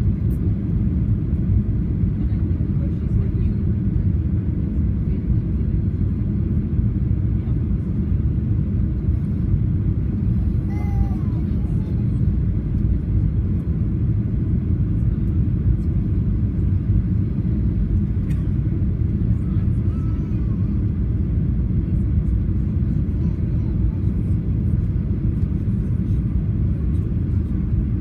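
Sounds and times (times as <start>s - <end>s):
airliner engines rumbling: 0.0s - 28.0s.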